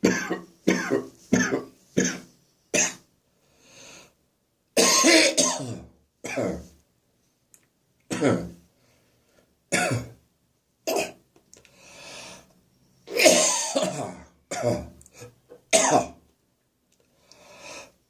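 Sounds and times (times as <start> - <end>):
person coughing harshly: 0.0 - 3.0, 4.8 - 6.7, 8.1 - 8.6, 9.7 - 10.2, 10.9 - 11.2, 13.1 - 16.2.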